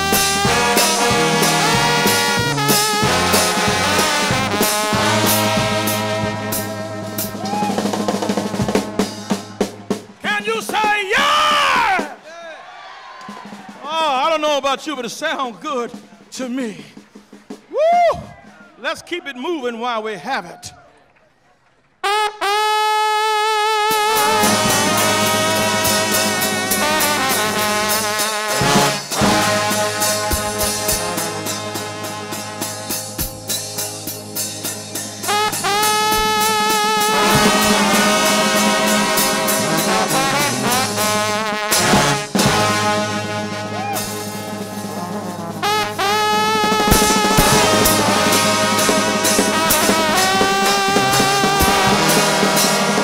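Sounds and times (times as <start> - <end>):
bass line: 0.0 - 10.2, 23.4 - 53.0
brass band playing gospel music: 0.0 - 12.2, 22.0 - 53.0.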